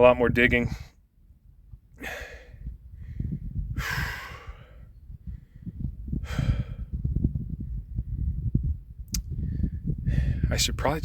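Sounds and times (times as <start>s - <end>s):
steady low rumble: 0.0s - 11.0s
man breathing heavily: 1.9s - 7.2s, 9.3s - 10.5s.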